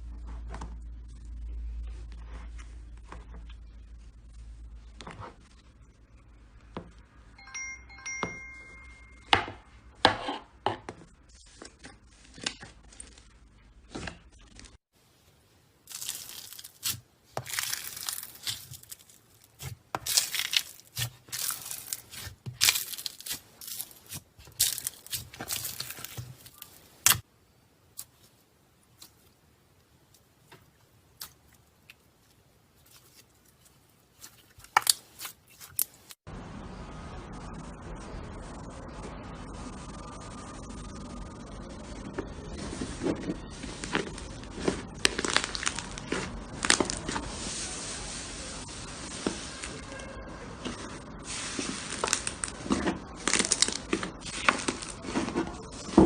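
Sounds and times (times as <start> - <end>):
slime squeezed crackling and popping: 15.9 - 27.2, 43.8 - 47.2, 51.6 - 56.0.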